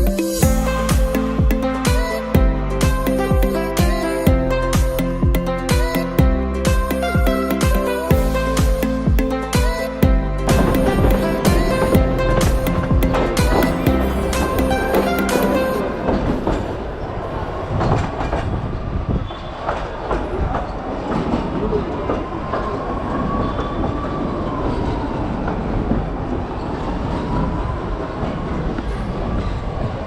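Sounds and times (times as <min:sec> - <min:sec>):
train rumbling on rails: 0:10.5 - 0:30.0.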